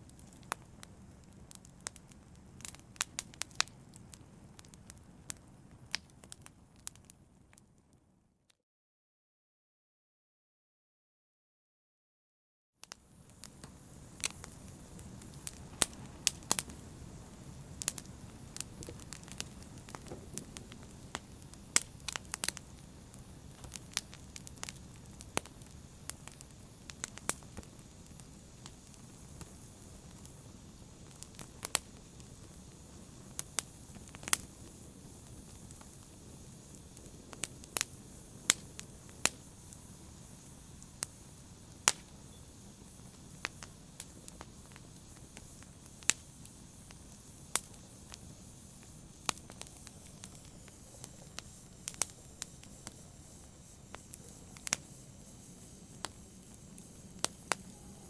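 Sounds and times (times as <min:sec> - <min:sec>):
burning logs popping and crackling: 0:00.0 - 0:07.8, 0:12.9 - 0:58.0
fire flames rushing: 0:13.1 - 0:58.0.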